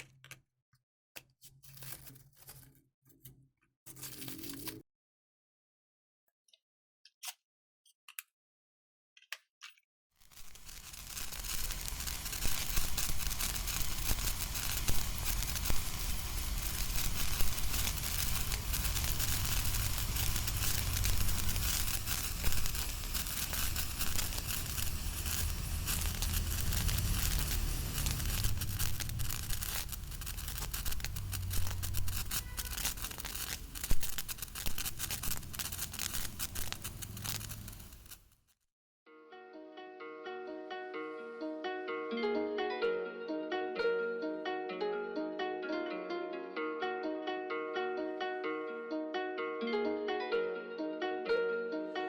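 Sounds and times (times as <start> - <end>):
firework crackling and fizzing: 10.2 - 38.3
loud firework cracks: 10.4 - 38.2.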